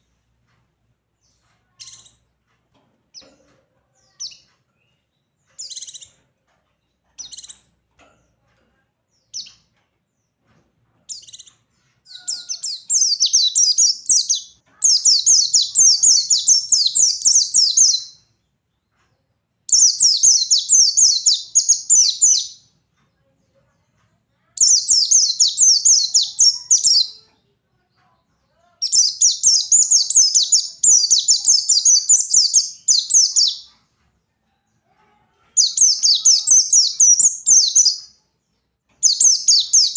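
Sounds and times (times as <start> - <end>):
bird chirps: 1.2 - 2.3, 4.0 - 6.2, 6.8 - 7.7, 11.1 - 18.5, 19.7 - 22.7, 24.6 - 27.3, 28.8 - 33.8, 35.6 - 38.2, 39.0 - 39.9
high-pitched bird twittering song: 1.3 - 2.2, 5.6 - 6.2, 7.2 - 7.6, 11.1 - 11.5, 12.1 - 18.3, 19.7 - 22.7, 24.6 - 27.2, 28.8 - 33.8, 35.6 - 38.2, 39.0 - 39.9.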